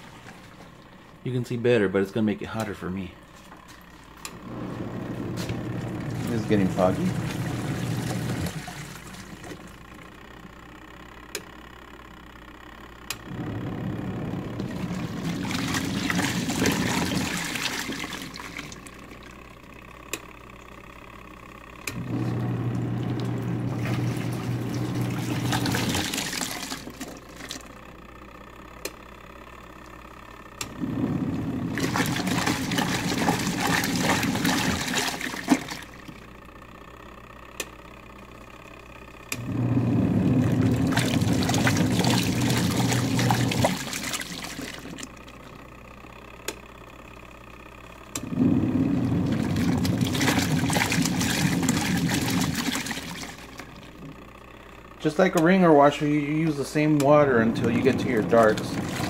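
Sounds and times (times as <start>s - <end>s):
washing machine motor hum: 0.0s - 59.0s
water churning and sloshing: 4.0s - 9.8s, 14.2s - 19.4s, 22.1s - 27.7s, 30.8s - 36.2s, 39.7s - 45.2s, 48.3s - 54.0s, 57.1s - 59.0s.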